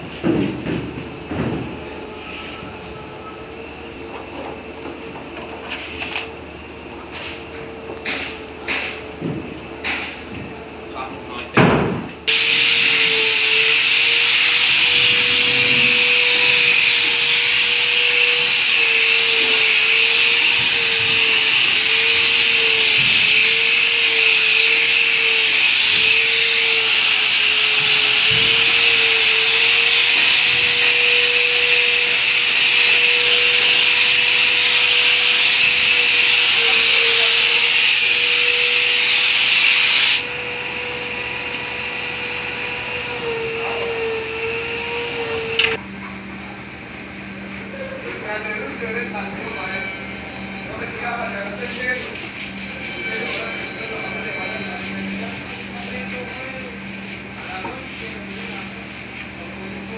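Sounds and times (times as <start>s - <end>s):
machine hum: 12.3s - 37.3s.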